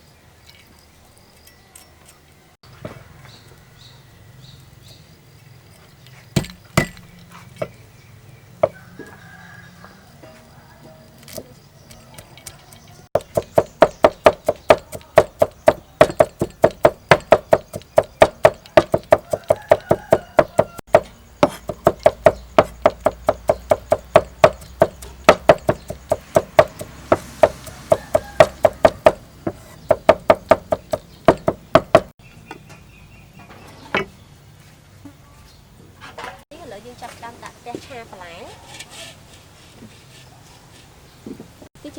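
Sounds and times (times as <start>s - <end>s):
knife chopping on cutting board: 13.2s - 32.1s.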